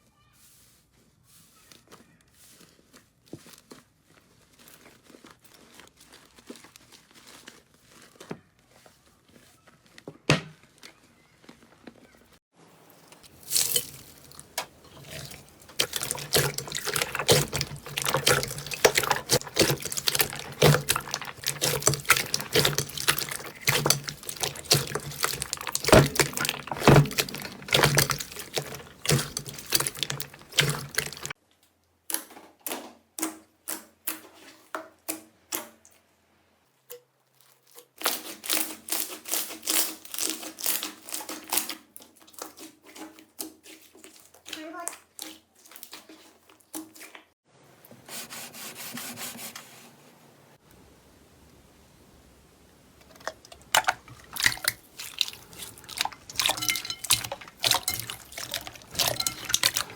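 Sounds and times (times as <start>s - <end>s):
slime squeezed with wet crackles: 13.3s - 31.4s, 53.2s - 59.9s.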